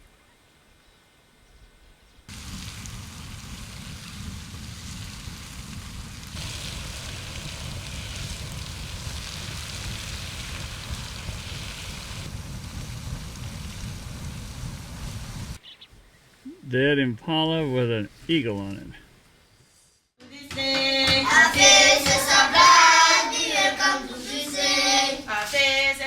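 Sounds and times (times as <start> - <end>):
wind buffeting microphone: 2.3 - 16.6
steady hiss: 2.3 - 20.2.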